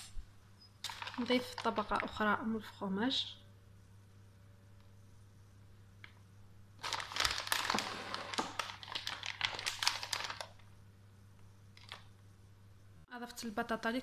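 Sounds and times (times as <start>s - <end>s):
packaging crinkling and rustling: 0.8s - 2.2s, 6.8s - 10.7s, 11.7s - 12.1s.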